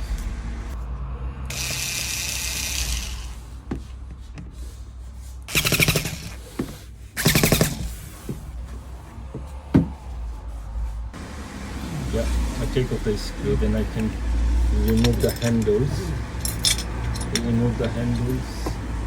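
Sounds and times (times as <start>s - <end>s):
power drill whirring: 1.5s - 3.4s.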